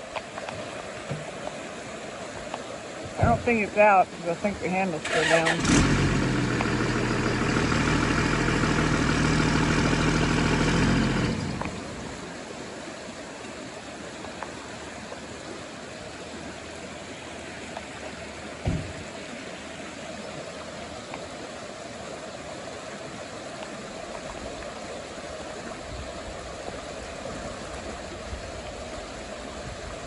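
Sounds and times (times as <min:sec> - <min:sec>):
rushing floodwater: 0:00.0 - 0:30.0
vehicle engine idling: 0:04.4 - 0:12.4
thump: 0:18.6 - 0:19.0.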